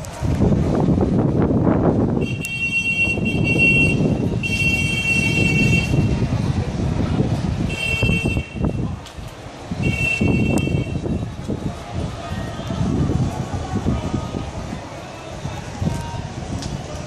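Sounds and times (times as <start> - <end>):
buzzy horn blasts: 2.2 - 6.2
low outdoor rumble: 3.1 - 17.0.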